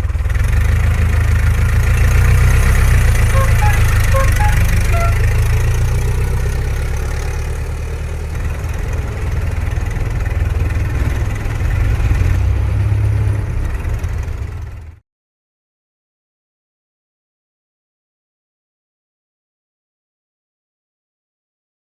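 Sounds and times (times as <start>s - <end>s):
car engine running: 0.0s - 15.0s.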